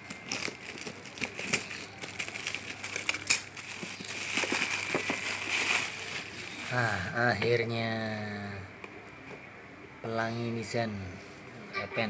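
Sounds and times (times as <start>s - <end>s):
packaging crinkling: 0.0s - 7.0s.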